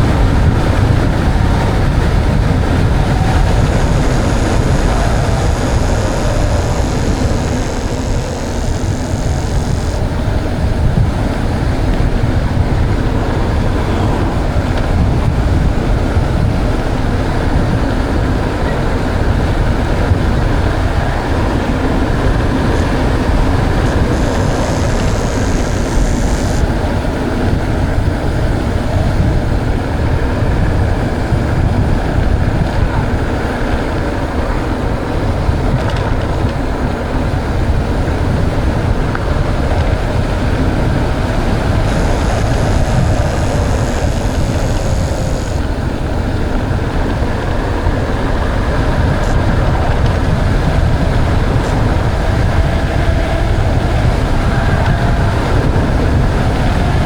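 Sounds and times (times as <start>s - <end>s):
wind buffeting microphone: 0.0s - 57.0s
high hiss: 0.1s - 10.9s, 20.6s - 27.0s, 40.5s - 46.1s.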